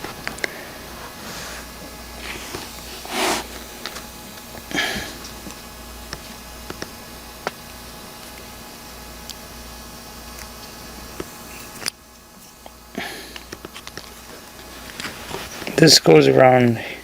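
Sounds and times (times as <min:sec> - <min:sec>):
breathy rustles: 0:00.1 - 0:05.4.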